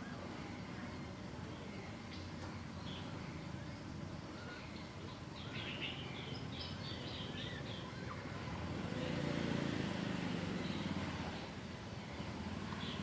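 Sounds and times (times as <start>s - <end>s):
outdoor background noise: 0.0s - 13.0s
bird high chirps: 4.3s - 8.3s.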